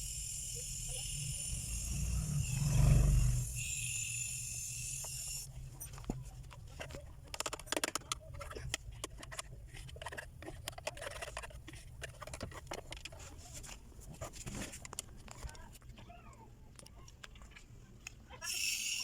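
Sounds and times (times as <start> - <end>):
aerosol spray hissing: 0.0 - 5.5, 18.5 - 19.0.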